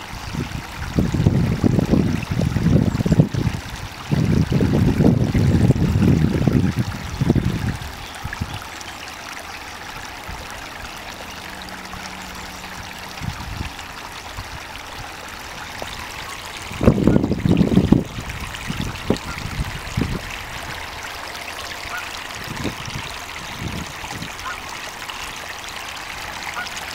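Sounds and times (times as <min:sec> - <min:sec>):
wind buffeting microphone: 0:00.0 - 0:08.7, 0:13.1 - 0:21.0, 0:22.3 - 0:24.4
stream water flowing: 0:00.0 - 0:26.9.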